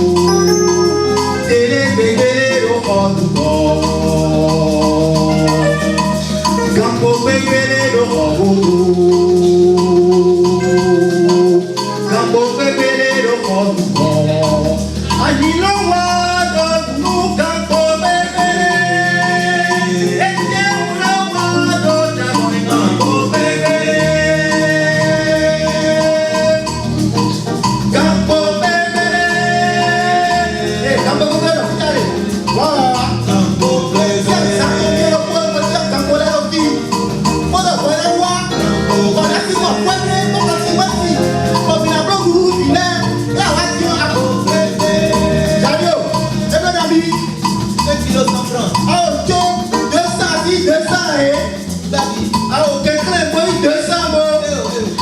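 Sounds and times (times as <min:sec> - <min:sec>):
song with sung long notes: 0:00.0 - 0:15.0, 0:18.1 - 0:27.1, 0:27.9 - 0:31.6, 0:38.6 - 0:42.0, 0:43.4 - 0:46.5
rhythmic beat and percussion: 0:00.0 - 0:55.0.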